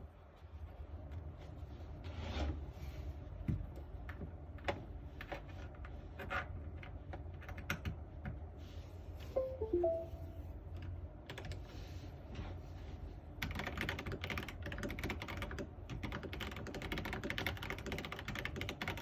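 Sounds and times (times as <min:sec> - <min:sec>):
low steady hum: 0:09.4 - 0:10.5.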